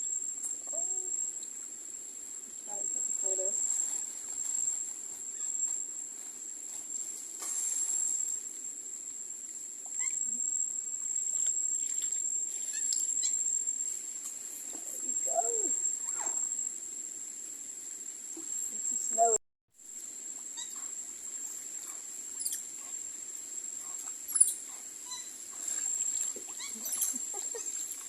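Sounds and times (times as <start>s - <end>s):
high-pitched insect drone: 9.9s - 16.7s, 20.0s - 23.1s, 23.8s - 28.0s.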